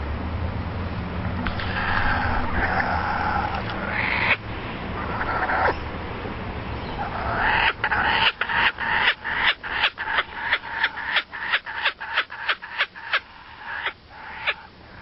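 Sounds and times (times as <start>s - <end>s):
animal making short repeated calls: 7.0s - 15.0s.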